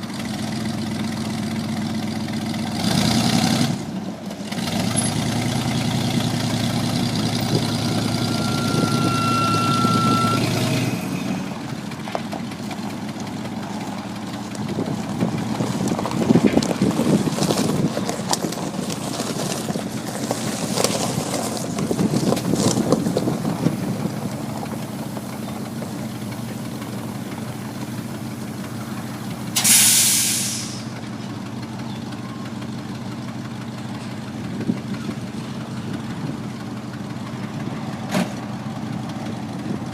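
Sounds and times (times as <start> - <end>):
truck engine idling: 0.0 - 39.9
air brake hiss: 29.6 - 30.9.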